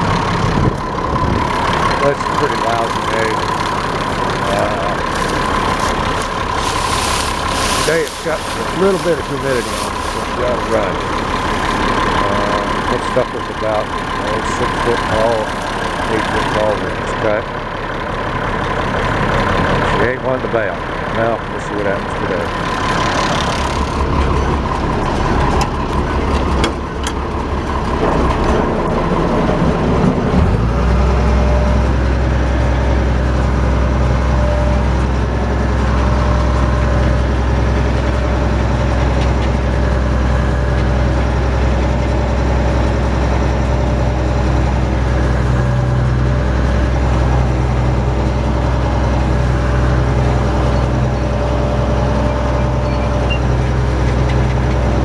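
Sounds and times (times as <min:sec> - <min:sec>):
steady low drone: 0:00.0 - 0:55.0
tractor engine running: 0:00.0 - 0:55.0
scattered clicks and knocks: 0:22.8 - 0:29.0.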